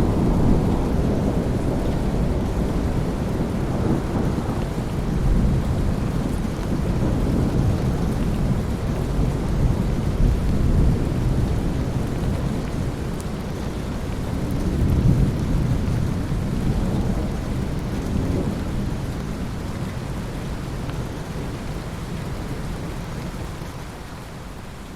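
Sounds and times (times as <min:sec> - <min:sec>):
rolling thunder: 0:00.0 - 0:13.0
steady rain: 0:00.0 - 0:24.9.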